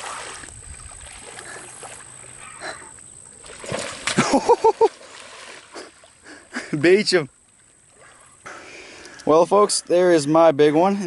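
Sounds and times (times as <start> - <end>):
fish splashing in water: 0.0 - 6.4.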